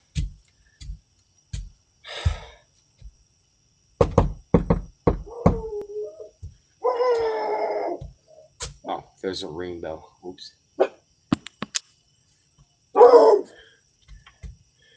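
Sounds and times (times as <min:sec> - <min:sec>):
knocking on door: 0:04.0 - 0:05.8.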